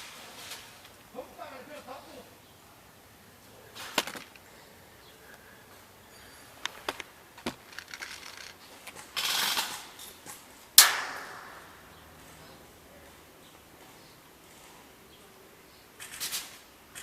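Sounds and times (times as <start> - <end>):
short rustle: 0.0 - 1.9
sharp crack: 10.8 - 12.3
sharp clicks: 16.0 - 17.0.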